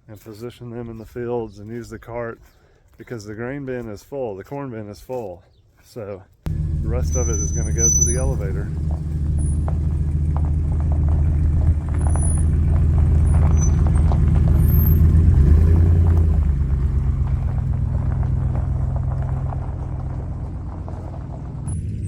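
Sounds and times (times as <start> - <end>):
light rattles: 6.5 - 22.0
tractor engine running: 6.5 - 22.0.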